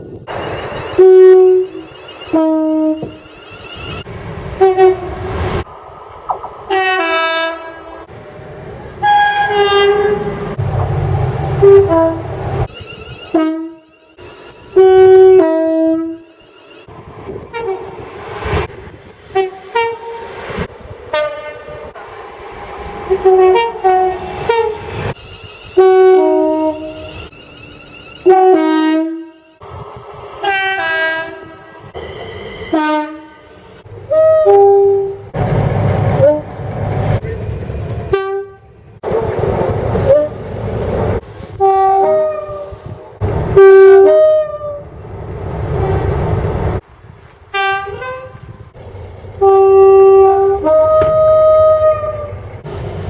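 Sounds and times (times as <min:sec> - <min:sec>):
train rumbling: 0:00.0 - 0:53.0
train horn blasts: 0:00.8 - 0:04.0, 0:04.6 - 0:05.3, 0:06.7 - 0:08.1, 0:09.0 - 0:10.4, 0:11.6 - 0:16.4, 0:17.5 - 0:17.9, 0:19.3 - 0:20.3, 0:21.1 - 0:22.0, 0:23.1 - 0:27.4, 0:28.2 - 0:29.6, 0:30.4 - 0:35.3, 0:38.1 - 0:38.8, 0:41.5 - 0:44.8, 0:47.5 - 0:48.7, 0:49.4 - 0:52.4.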